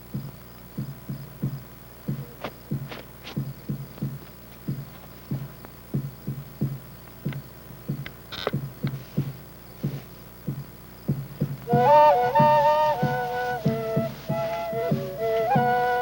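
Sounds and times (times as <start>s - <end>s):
drum beating low thumps: 0.0s - 16.0s
faint clicks: 7.0s - 9.0s.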